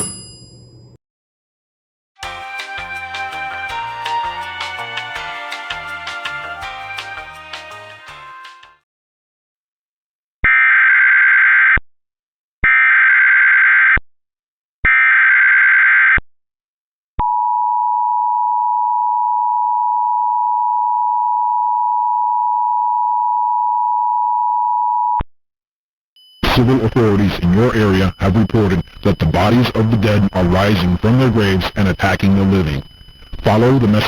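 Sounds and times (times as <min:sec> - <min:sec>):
two-tone attention signal: 0:26.2 - 0:34.0
digital data header bursts: 0:26.4 - 0:34.0.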